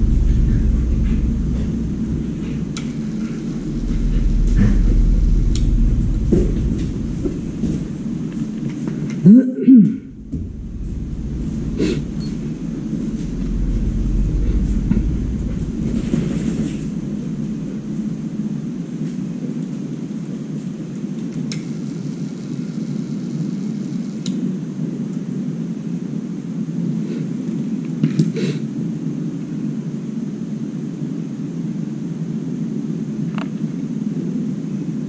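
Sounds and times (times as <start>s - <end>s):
low rumbling drone: 0.0s - 24.2s.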